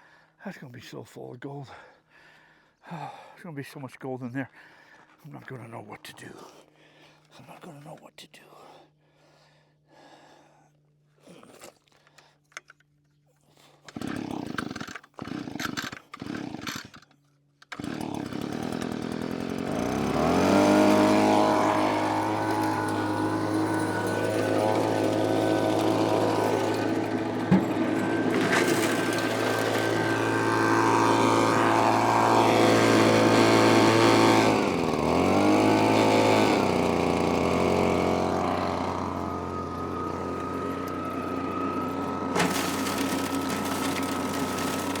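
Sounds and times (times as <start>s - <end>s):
small engine running: 13.9s - 45.0s.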